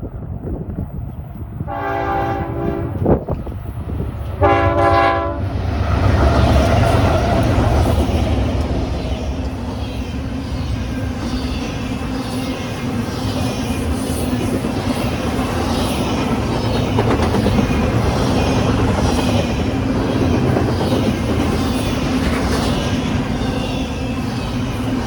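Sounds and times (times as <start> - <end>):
train rumbling past: 0.0 - 25.0
wind buffeting microphone: 0.0 - 25.0
train horn blasts: 1.7 - 3.3, 4.4 - 5.6.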